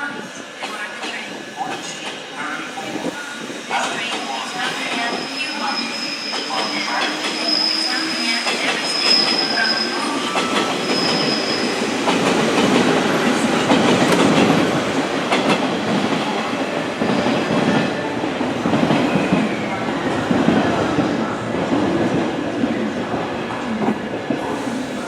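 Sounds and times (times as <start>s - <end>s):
high wheel squeal: 4.9s - 12.0s
train wheels clacking over rail joints: 12.0s - 16.3s.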